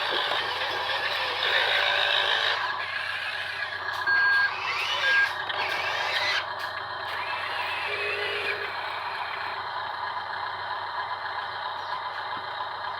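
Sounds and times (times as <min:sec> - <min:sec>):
toy truck electric motors whining: 0:00.0 - 0:09.6
short electronic beeps: 0:04.0 - 0:04.6.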